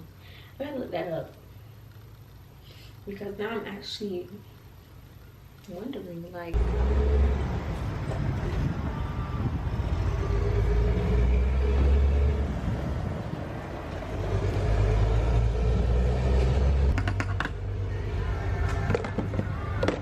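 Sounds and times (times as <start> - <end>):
car engine and road rumble: 6.5 - 20.0.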